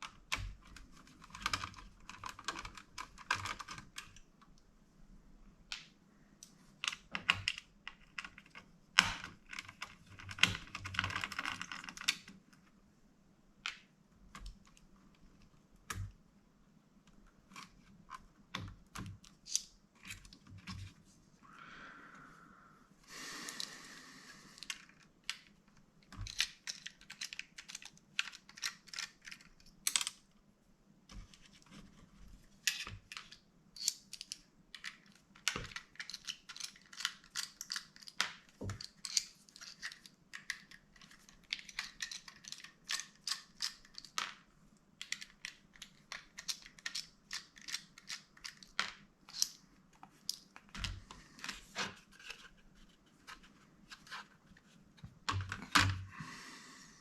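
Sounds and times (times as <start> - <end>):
small clicks and taps of parts: 0.0 - 4.6, 5.7 - 12.7, 13.6 - 16.2, 17.0 - 21.0, 24.6 - 30.3, 31.1 - 51.6.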